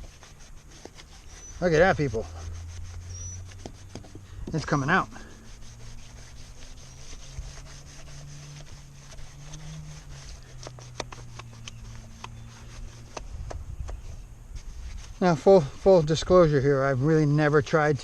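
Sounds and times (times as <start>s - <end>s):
sharp scrapes: 0.0s - 16.6s
hand scrubbing a hull: 0.0s - 17.4s.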